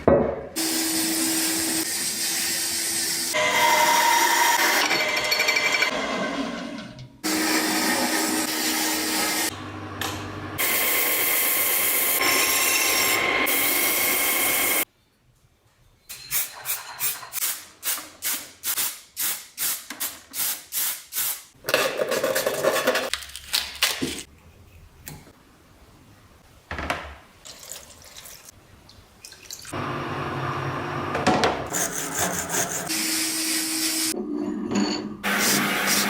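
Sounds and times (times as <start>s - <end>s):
rubbing strokes: 31.7s - 32.9s.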